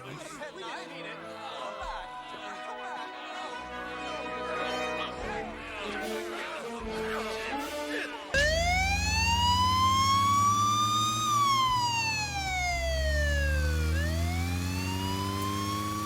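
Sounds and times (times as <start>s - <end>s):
low engine rumble: 8.4s - 16.0s
police siren wailing: 8.4s - 16.0s.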